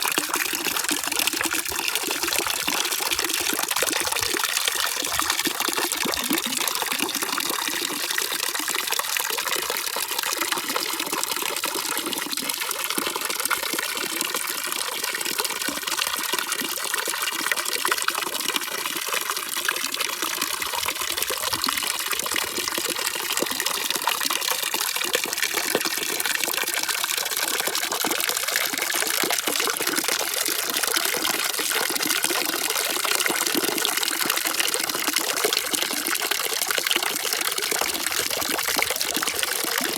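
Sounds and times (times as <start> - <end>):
running water rushing: 37.4 - 39.9.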